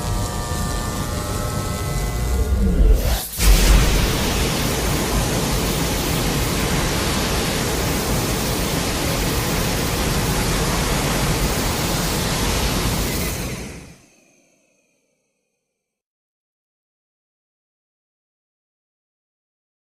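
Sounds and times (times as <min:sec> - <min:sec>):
loud static noise: 0:00.0 - 0:14.0.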